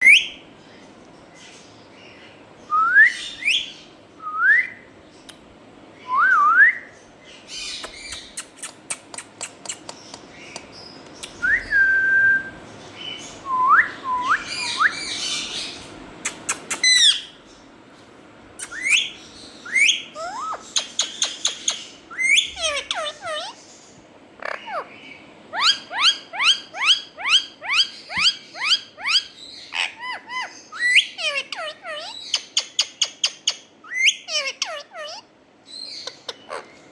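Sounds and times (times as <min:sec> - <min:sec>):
parakeet screeching: 0:16.7 - 0:17.4, 0:18.6 - 0:23.7, 0:24.4 - 0:36.8.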